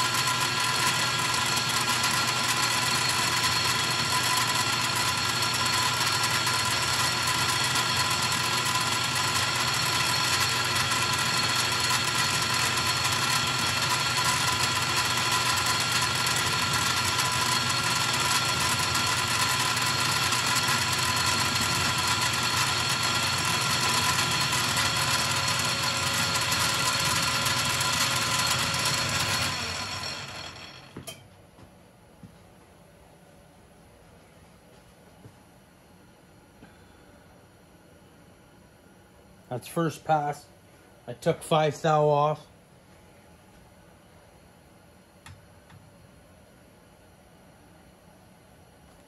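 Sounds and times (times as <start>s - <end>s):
metal lathe whining: 0.0s - 31.0s.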